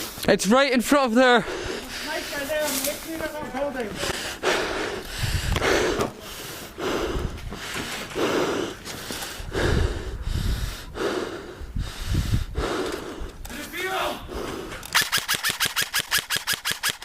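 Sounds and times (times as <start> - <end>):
person breathing heavily: 0.0 - 0.2, 1.3 - 13.4, 14.2 - 14.9.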